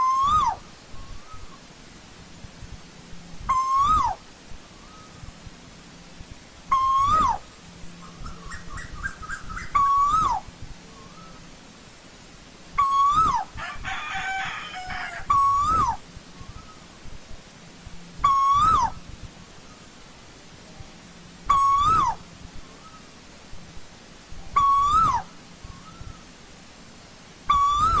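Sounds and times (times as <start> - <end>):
bird calling rising note: 0.0 - 1.7, 3.5 - 4.2, 6.7 - 11.5, 18.2 - 19.0, 21.5 - 23.1, 24.6 - 26.3, 27.5 - 28.0.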